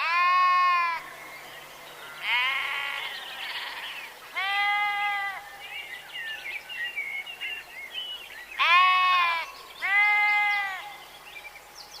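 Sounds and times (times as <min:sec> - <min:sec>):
sheep bleating: 0:00.0 - 0:01.0, 0:02.2 - 0:05.5, 0:08.6 - 0:10.8.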